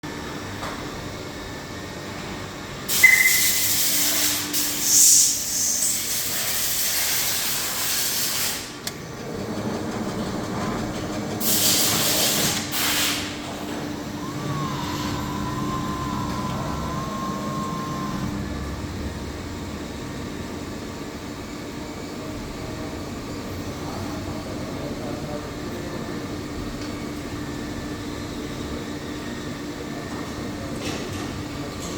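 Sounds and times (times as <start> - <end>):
machine hissing: 2.9 - 8.9, 11.4 - 18.4
steady machine hum: 8.6 - 29.2.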